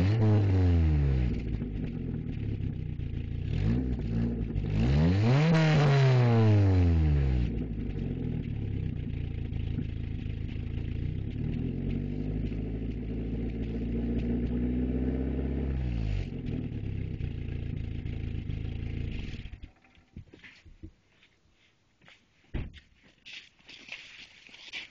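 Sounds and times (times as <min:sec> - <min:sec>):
car engine revving: 0:00.0 - 0:19.7.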